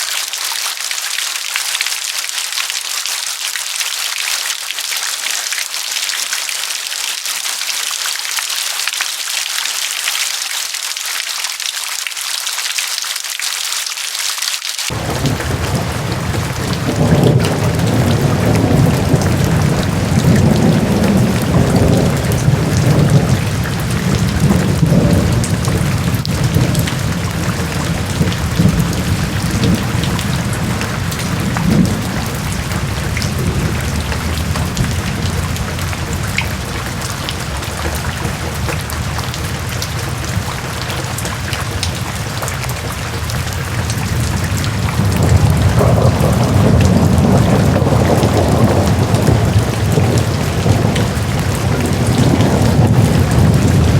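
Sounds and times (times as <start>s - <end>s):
heavy rain falling: 0.0s - 53.9s
rolling thunder: 14.9s - 53.9s.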